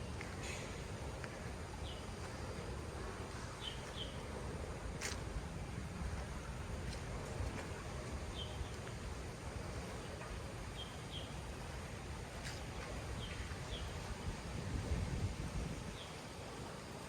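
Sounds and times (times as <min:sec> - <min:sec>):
low outdoor rumble: 0:00.0 - 0:17.0.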